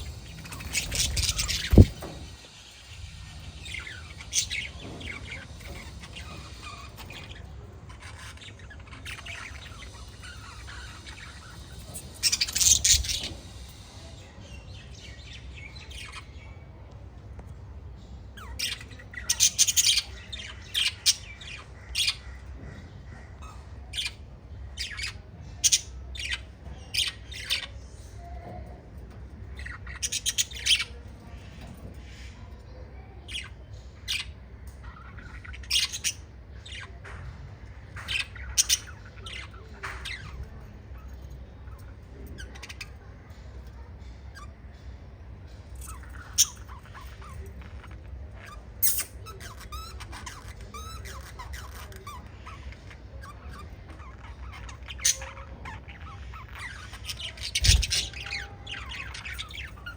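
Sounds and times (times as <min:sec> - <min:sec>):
parrots chirping: 0:00.0 - 0:14.2, 0:29.5 - 0:31.7, 0:33.0 - 0:44.6, 0:45.6 - 0:59.9
steady low hum: 0:00.0 - 0:16.2.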